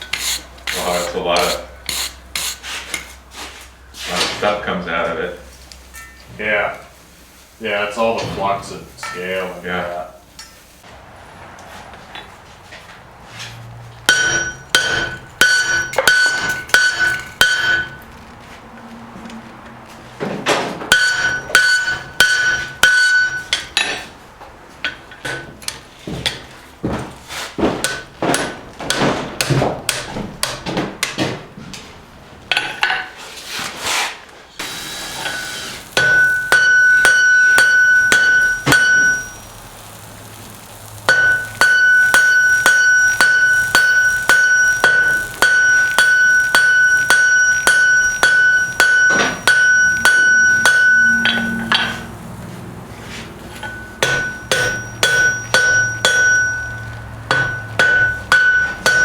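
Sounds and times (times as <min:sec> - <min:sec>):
hammer striking steel on anvil: 0:09.0 - 0:09.5, 0:14.1 - 0:18.0, 0:20.9 - 0:24.0, 0:35.2 - 0:39.6, 0:41.1 - 0:52.2, 0:53.5 - 0:59.0.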